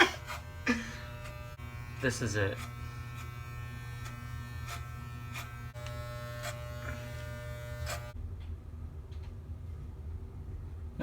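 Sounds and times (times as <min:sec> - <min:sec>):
electric hair clippers buzzing: 0:00.0 - 0:08.2.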